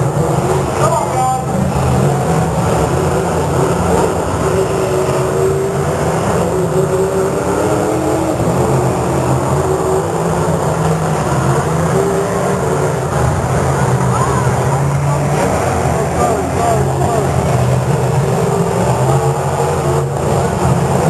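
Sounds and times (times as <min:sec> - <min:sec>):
car engines revving: 0:00.0 - 0:21.0
low rumble: 0:00.0 - 0:21.0.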